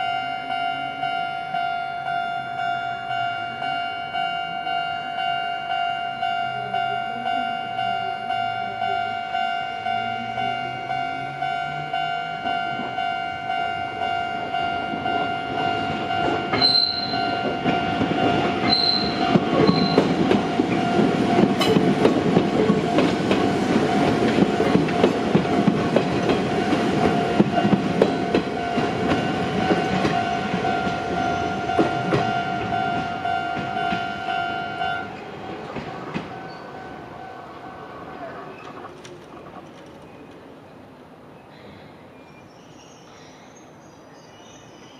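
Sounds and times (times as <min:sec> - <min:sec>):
level crossing alarm ringing: 0:00.0 - 0:37.8
train horn toots: 0:13.5 - 0:21.2
train wheels clattering over rail joints: 0:14.9 - 0:34.2, 0:38.1 - 0:40.5.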